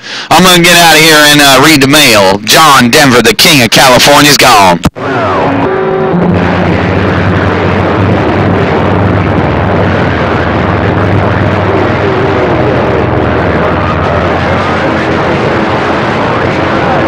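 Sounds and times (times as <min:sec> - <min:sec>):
faint wavering radio tones: 0:00.0 - 0:17.0
radio static hiss: 0:00.0 - 0:17.0
low hum: 0:04.8 - 0:17.0.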